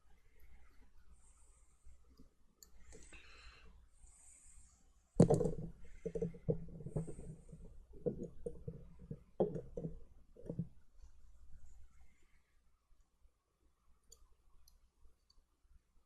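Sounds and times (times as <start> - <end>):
clicks and knocks on work surface: 5.2 - 10.7.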